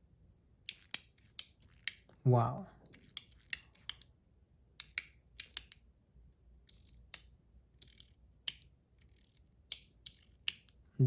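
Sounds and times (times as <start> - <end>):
metal fidget toy clicking: 0.7 - 2.0, 2.9 - 4.1, 4.8 - 5.8, 6.7 - 10.8.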